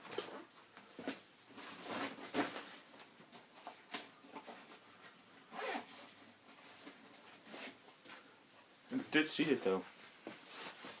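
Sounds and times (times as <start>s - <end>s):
rustling scraping handling noises: 9.9s - 11.0s.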